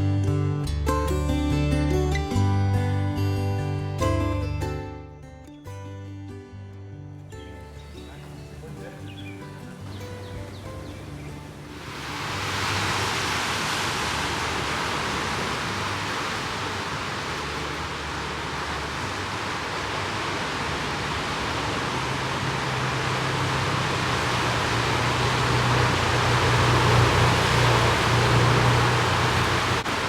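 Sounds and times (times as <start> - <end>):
waterfall rushing into pool: 7.6 - 30.0.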